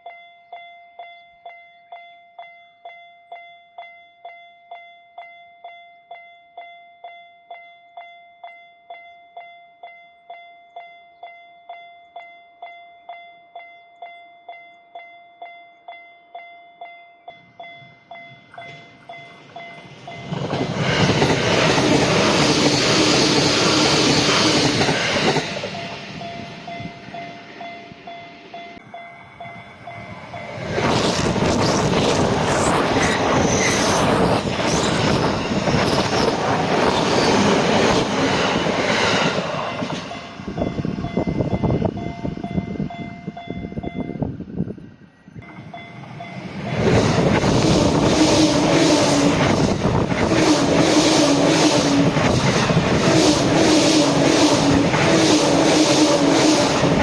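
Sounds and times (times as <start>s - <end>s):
level-crossing alarm bell: 0.0s - 31.4s, 40.0s - 44.2s, 45.4s - 47.5s
train passing loudly: 17.3s - 57.0s.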